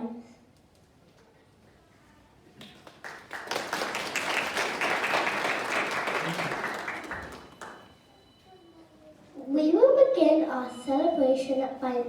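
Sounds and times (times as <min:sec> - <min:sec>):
audience applauding: 0:02.6 - 0:07.9.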